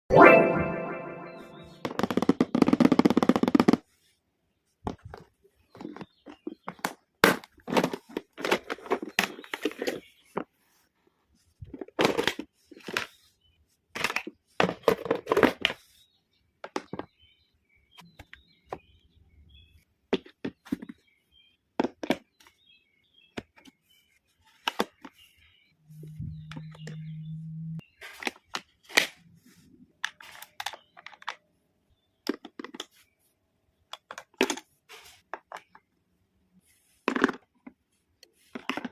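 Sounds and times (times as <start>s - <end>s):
plastic packaging clicking and crinkling: 4.9s - 10.0s, 11.7s - 13.2s, 30.0s - 31.4s.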